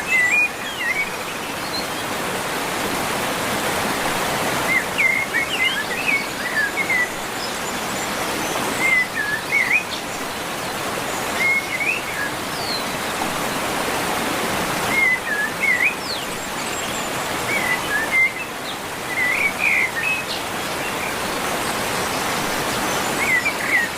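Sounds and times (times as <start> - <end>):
flowing water: 0.0 - 23.9.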